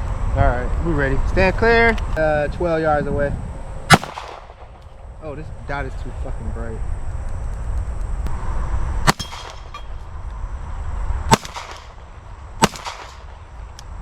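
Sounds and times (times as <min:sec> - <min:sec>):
pistol shots with echo: 0:03.9 - 0:04.8, 0:09.1 - 0:10.0, 0:11.3 - 0:13.5.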